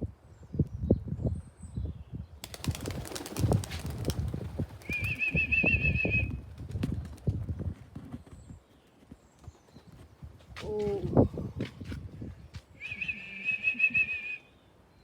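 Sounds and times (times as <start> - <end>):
pigeon wings clattering: 2.4 - 7.4
short wavering whistle: 12.8 - 14.5.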